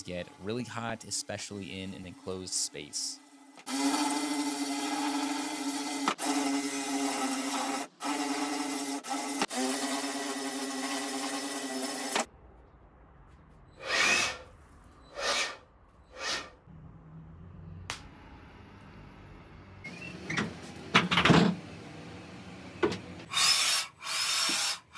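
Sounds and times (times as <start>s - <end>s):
power drill running: 3.2s - 12.3s, 13.8s - 14.4s, 21.6s - 24.9s
short swishing sounds: 15.1s - 16.6s.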